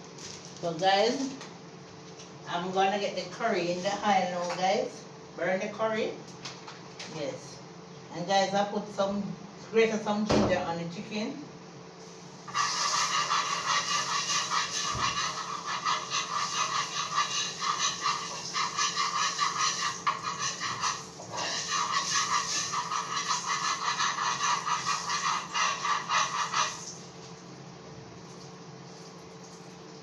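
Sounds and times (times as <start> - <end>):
curry powder sizzling in oil: 12.0 - 27.4.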